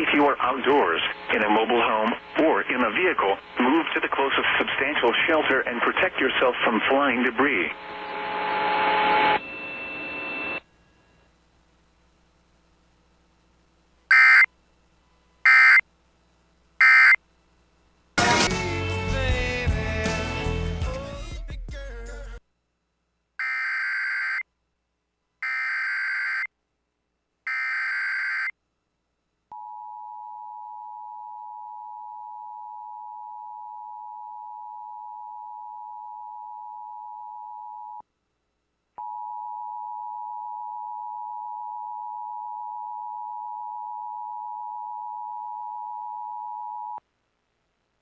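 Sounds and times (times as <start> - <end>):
data bursts: 14.1 - 14.5, 15.5 - 15.8, 16.8 - 17.2
two-tone alert signal: 14.1 - 14.5
music: 18.2 - 22.4.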